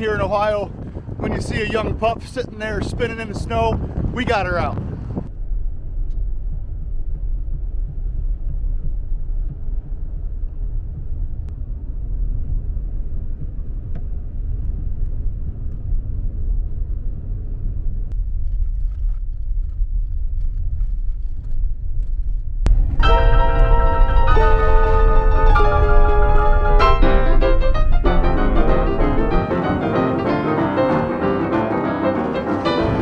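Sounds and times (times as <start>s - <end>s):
motor vehicle rumbling: 3.7s - 33.0s
keyboard music: 22.7s - 33.0s.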